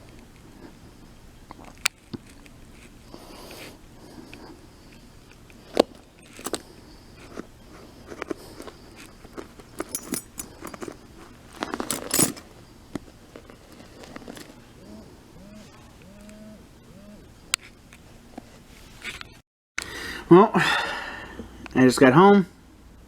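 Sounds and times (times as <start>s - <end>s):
keys jangling: 9.6s - 12.5s.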